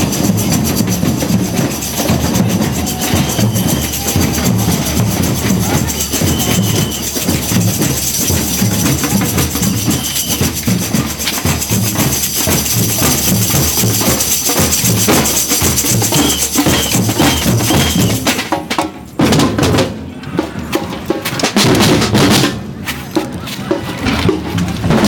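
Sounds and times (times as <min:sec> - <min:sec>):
tambourines and shakers jingling: 0:00.0 - 0:18.4
drum rhythm: 0:00.0 - 0:25.0.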